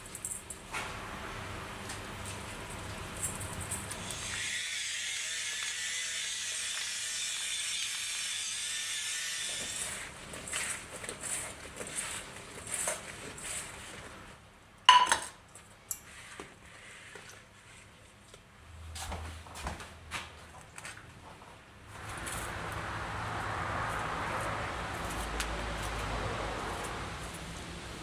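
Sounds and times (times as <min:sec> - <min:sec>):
steady hiss: 0:00.0 - 0:04.4.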